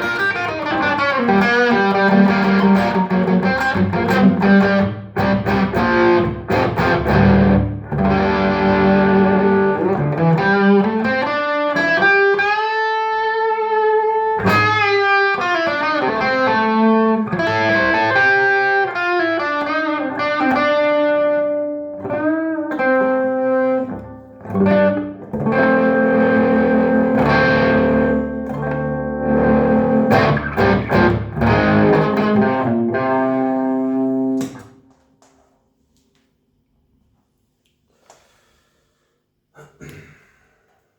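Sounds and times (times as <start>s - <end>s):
electric guitar notes and chords: 0.0s - 34.8s.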